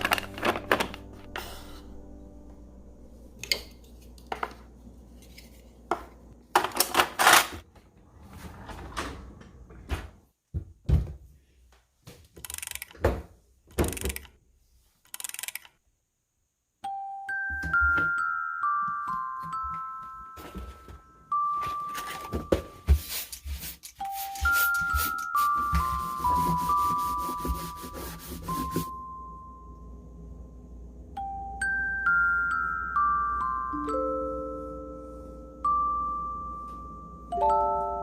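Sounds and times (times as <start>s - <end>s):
bell-like melody: 16.8s - 22.8s, 24.0s - 27.9s, 28.6s - 38.0s.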